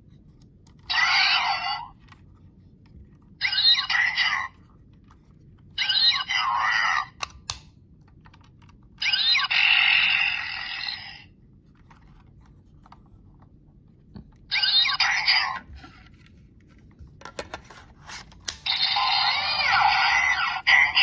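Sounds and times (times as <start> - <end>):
toy belt electronic sound effects: 3.4 - 4.5, 9.0 - 11.2, 14.5 - 15.6, 18.7 - 21.0.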